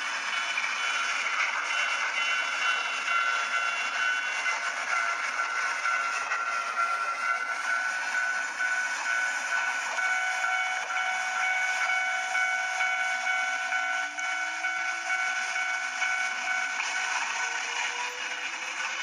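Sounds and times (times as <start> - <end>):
railroad crossing signal ringing: 0.0 - 19.0
continuous rushing noise: 15.8 - 19.0.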